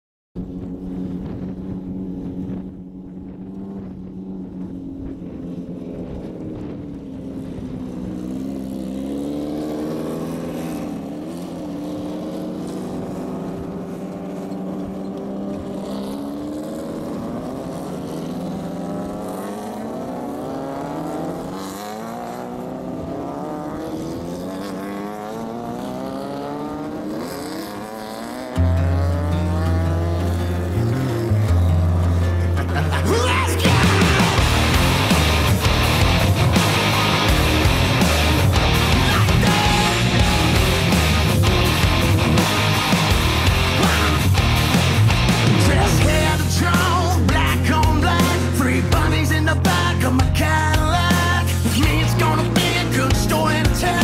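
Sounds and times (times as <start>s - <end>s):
race car engine revving: 0.4s - 54.0s
loud low beat: 33.6s - 54.0s.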